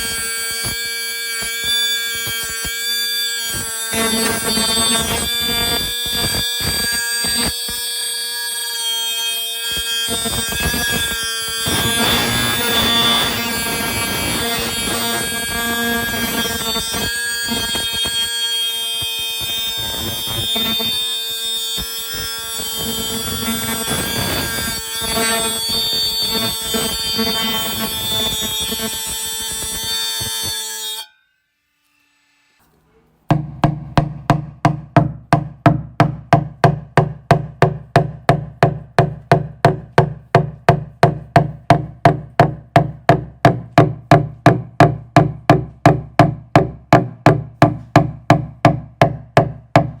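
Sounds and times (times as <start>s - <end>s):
metal cutting screech: 0.0s - 33.2s
steady even knocking: 33.3s - 50.0s.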